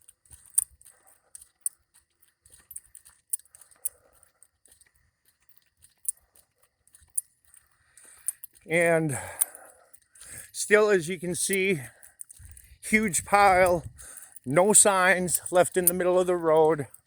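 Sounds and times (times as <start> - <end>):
footsteps on loose dirt: 10.2 - 16.9.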